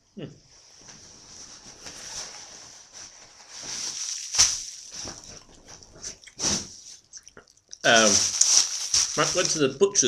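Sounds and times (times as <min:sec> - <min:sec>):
packaging rustling: 0:01.9 - 0:07.0, 0:07.8 - 0:09.8.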